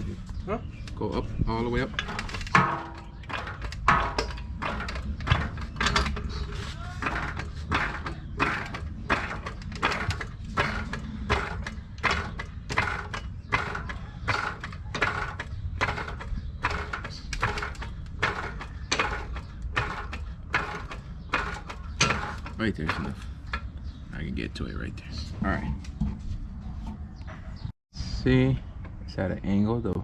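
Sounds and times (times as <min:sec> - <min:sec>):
hydraulic floor jack pumping: 0:01.9 - 0:23.8.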